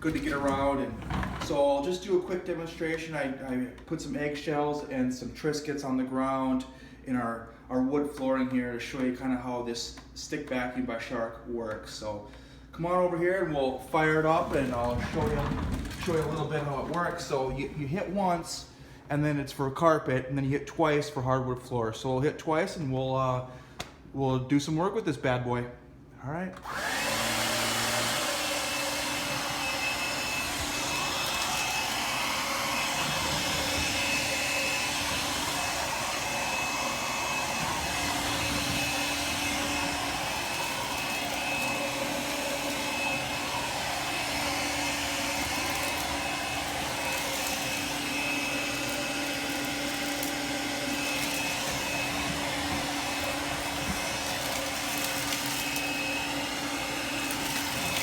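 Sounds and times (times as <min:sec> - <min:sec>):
stick vacuum motor whine: 0:26.6 - 0:58.0.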